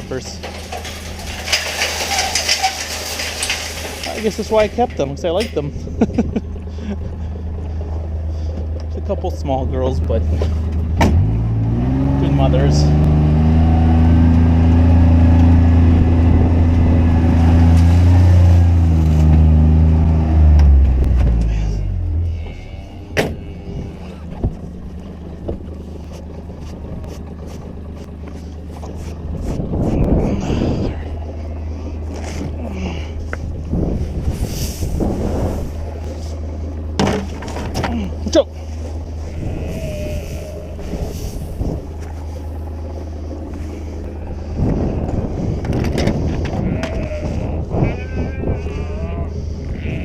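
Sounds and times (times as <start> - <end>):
rustling and knocking: 0.4 - 5.7
engine running at low revs: 5.4 - 50.0
sheep bleating: 22.2 - 24.2, 39.2 - 41.0, 46.5 - 50.0.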